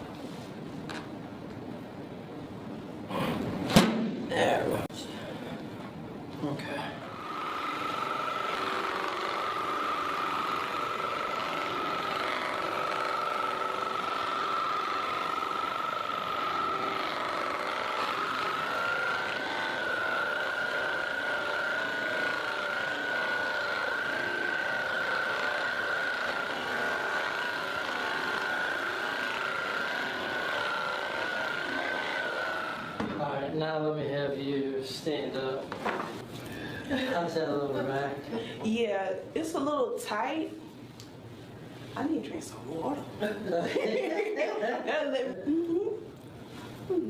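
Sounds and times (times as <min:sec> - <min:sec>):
percussion massager motor whine: 0:07.0 - 0:33.5.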